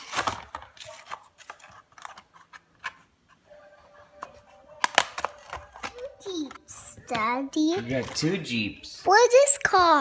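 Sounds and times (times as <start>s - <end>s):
plastic packaging crackling: 0.0s - 2.5s.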